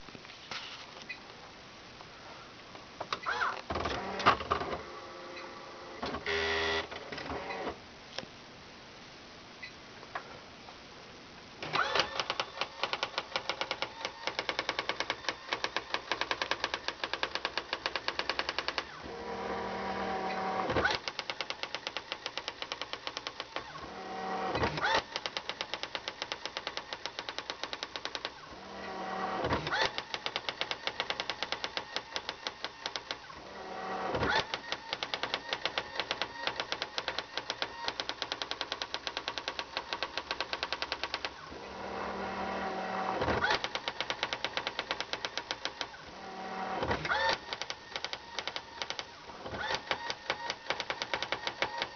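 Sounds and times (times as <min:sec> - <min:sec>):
carriage return whir and knock: 0:11.6 - 0:51.9.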